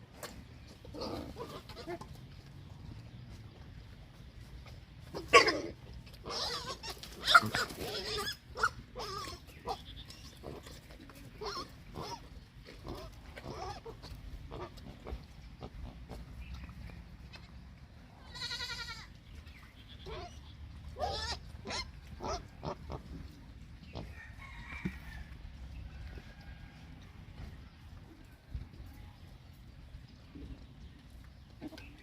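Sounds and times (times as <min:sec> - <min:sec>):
pigs grunting and squealing: 0:00.6 - 0:02.3, 0:05.0 - 0:16.2, 0:19.8 - 0:24.2.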